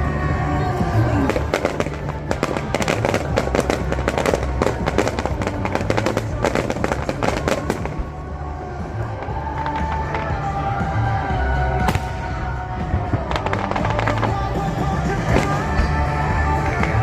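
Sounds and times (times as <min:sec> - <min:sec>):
fireworks bangs and crackles: 0:00.0 - 0:17.0
music playing: 0:00.0 - 0:17.0.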